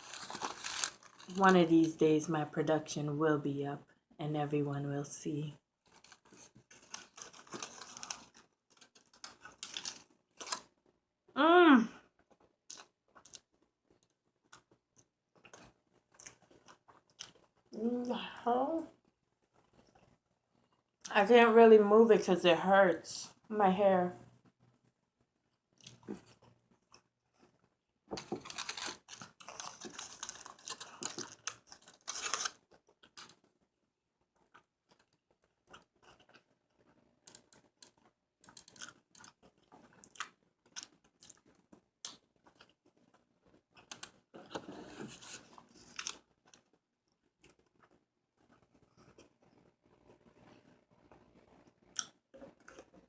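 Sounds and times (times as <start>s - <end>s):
person chewing a burger: 0.0s - 1.3s, 5.9s - 11.0s, 12.2s - 17.7s, 25.7s - 33.5s, 34.3s - 53.0s.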